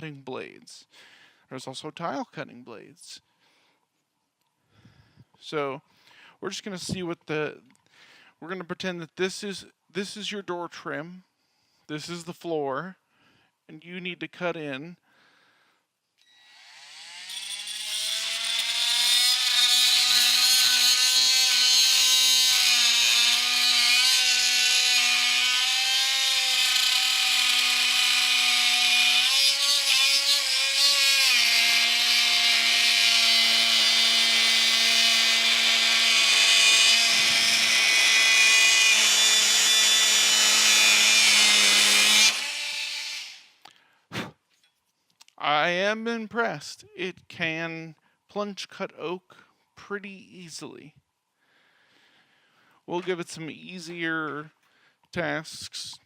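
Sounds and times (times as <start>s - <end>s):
oscillating multi-tool cutting wood: 16.2s - 43.6s.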